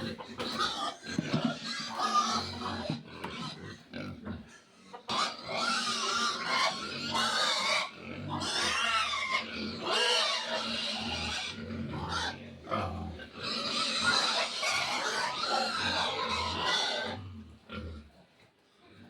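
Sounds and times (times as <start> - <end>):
piglets squealing: 5.0 - 12.4, 13.4 - 17.2.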